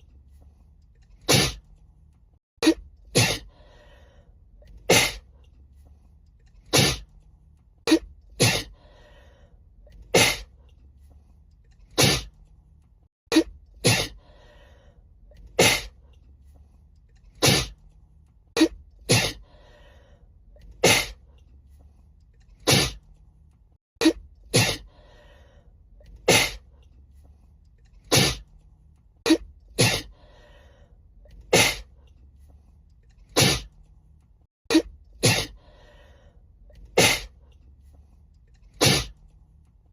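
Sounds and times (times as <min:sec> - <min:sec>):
woman sneezing: 0:01.3 - 0:01.6, 0:02.6 - 0:03.5, 0:07.9 - 0:08.7, 0:10.2 - 0:10.5, 0:13.3 - 0:14.2, 0:15.6 - 0:15.9, 0:19.1 - 0:19.4, 0:20.8 - 0:21.2, 0:24.0 - 0:24.9, 0:34.7 - 0:35.6, 0:37.0 - 0:37.3, 0:38.8 - 0:39.1.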